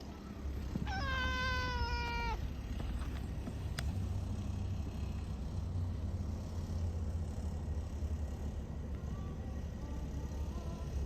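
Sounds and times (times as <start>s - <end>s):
cat meowing: 0.8s - 2.6s.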